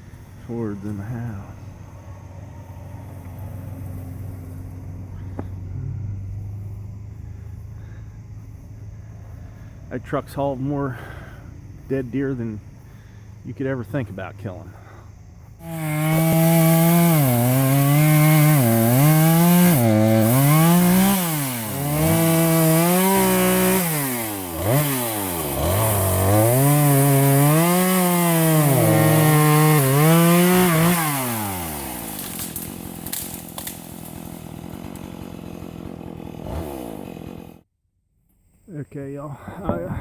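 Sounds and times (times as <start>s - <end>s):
engine revving: 0.8s - 8.6s, 15.6s - 37.6s.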